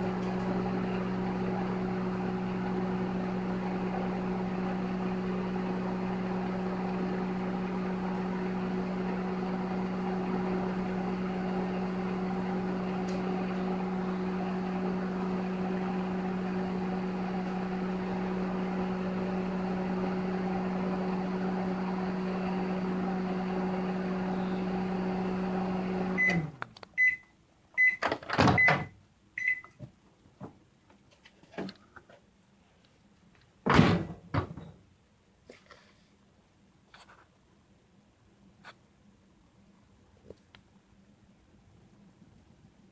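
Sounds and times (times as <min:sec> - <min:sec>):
microwave oven humming: 0:00.0 - 0:29.8.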